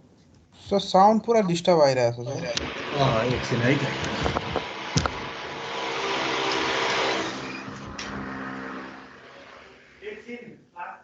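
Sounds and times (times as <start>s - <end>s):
lecture speech: 0.6s - 4.1s
sharp clicks: 2.5s - 5.3s
loud rushing noise: 2.6s - 10.2s.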